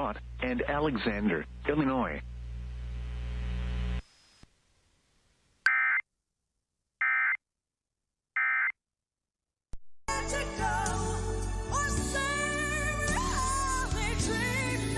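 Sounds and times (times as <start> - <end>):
music: 10.1 - 14.9.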